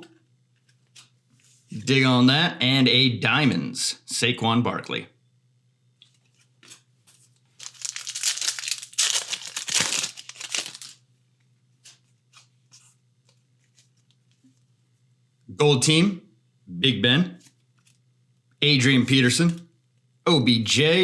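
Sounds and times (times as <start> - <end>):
wrapper tearing and crinkling: 7.6 - 11.0.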